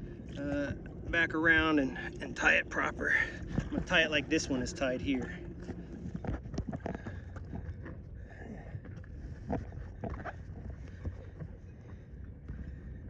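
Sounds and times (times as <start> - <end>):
water: 0.0 - 13.0
wind: 0.0 - 13.0.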